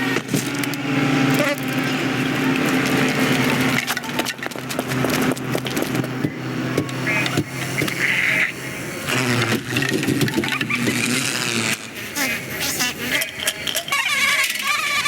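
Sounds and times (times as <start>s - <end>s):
steady buzzing hum: 0.0s - 15.0s
small clicks and clatters: 0.2s - 8.0s, 13.1s - 15.0s.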